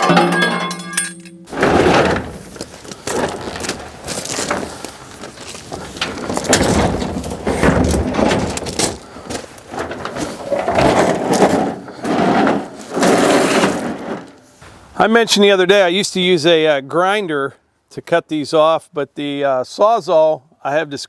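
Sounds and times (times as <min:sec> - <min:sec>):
plastic and metal scraping: 0:01.5 - 0:14.8.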